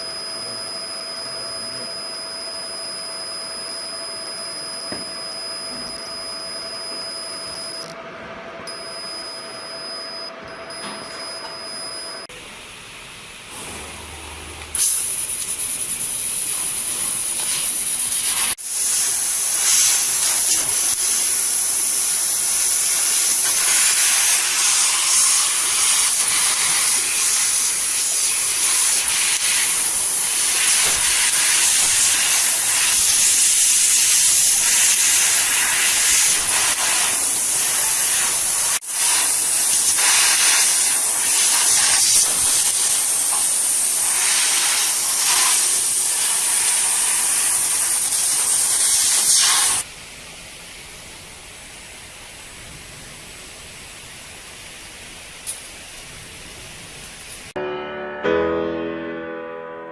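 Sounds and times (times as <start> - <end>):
laser cutting machine hissing: 13.5 - 49.9.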